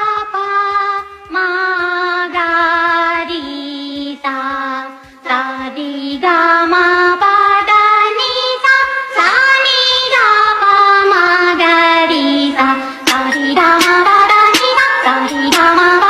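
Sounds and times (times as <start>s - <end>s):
high-pitched voice singing: 0.0s - 16.0s.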